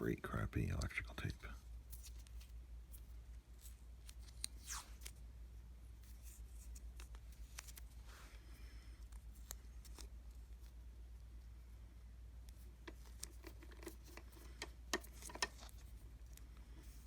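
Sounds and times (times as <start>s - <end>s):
low steady hum: 0.0s - 17.0s
tape peeling crackles: 1.8s - 5.2s, 6.0s - 8.0s, 9.0s - 10.8s.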